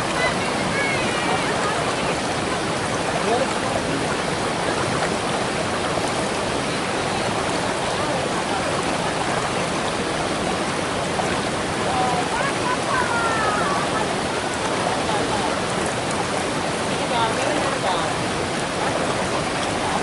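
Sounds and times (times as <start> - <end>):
waterfall rushing water: 0.0 - 20.0.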